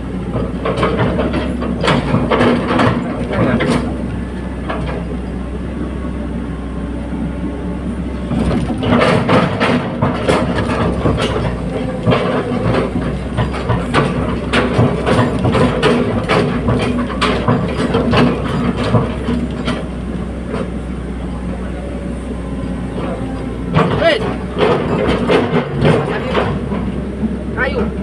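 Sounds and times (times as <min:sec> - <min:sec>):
machine clanks and knocks: 0:00.0 - 0:05.3, 0:08.2 - 0:20.8, 0:22.5 - 0:28.0
excavator engine drone: 0:00.0 - 0:28.0.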